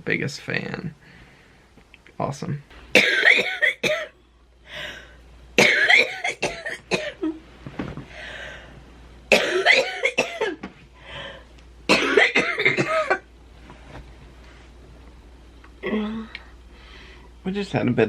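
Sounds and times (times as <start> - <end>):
person coughing hard: 3.0 - 4.2, 5.6 - 7.4, 9.3 - 10.6, 11.9 - 13.3
hissing breaths: 8.1 - 8.9, 10.9 - 11.6, 16.2 - 17.4.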